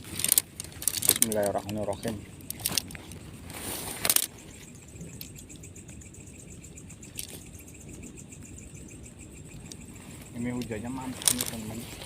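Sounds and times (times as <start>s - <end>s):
loud rustle: 2.6s - 4.7s.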